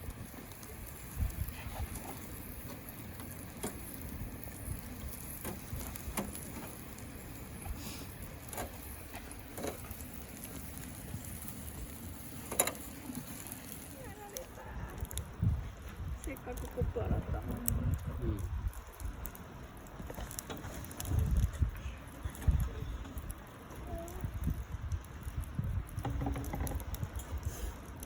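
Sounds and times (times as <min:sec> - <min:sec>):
fire crackling and popping: 0:00.0 - 0:28.0
low rumble: 0:13.0 - 0:20.0.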